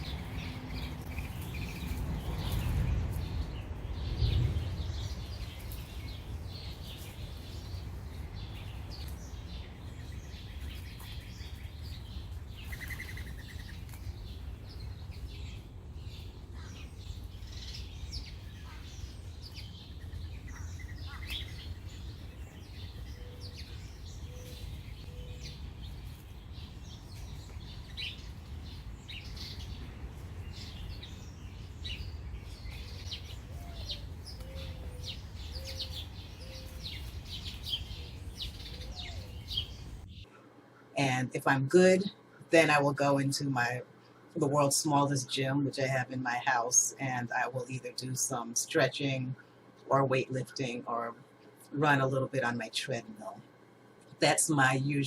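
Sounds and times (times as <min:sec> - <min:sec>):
low rumble: 0:00.0 - 0:07.7
low background hum: 0:00.0 - 0:55.0
small birds chirping: 0:00.0 - 0:55.0.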